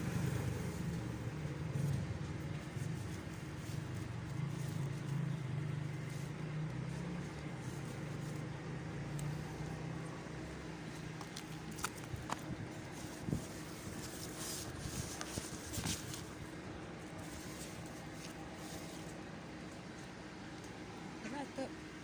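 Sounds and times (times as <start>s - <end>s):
engine humming: 0.0s - 22.0s.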